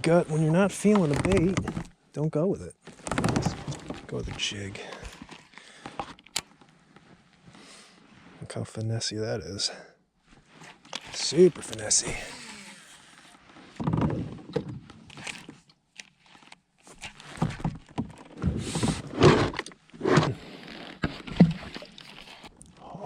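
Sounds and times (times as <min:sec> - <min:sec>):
gear knocking and rustling: 0:00.7 - 0:01.9, 0:02.8 - 0:06.2.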